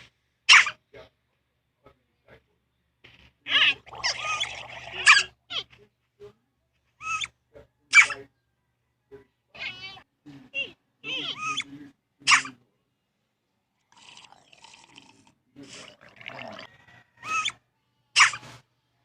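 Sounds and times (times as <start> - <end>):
cat meowing: 9.6 - 10.0
cat sneezing: 12.3 - 12.6, 18.2 - 18.6.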